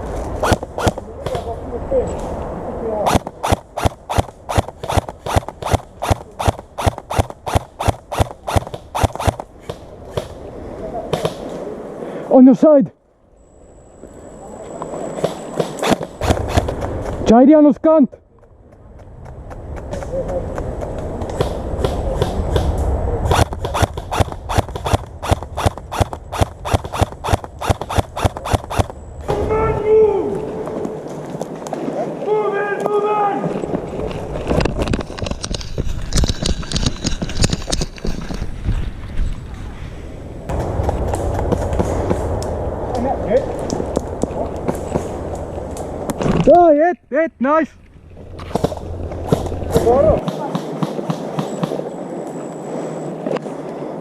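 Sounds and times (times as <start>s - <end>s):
running footsteps: 14.0s - 17.4s, 18.3s - 29.5s, 30.2s - 39.8s, 40.5s - 46.5s, 47.7s - 51.9s
running footsteps on dry ground: 18.4s - 22.5s, 30.2s - 32.2s, 33.4s - 39.9s, 40.5s - 42.6s.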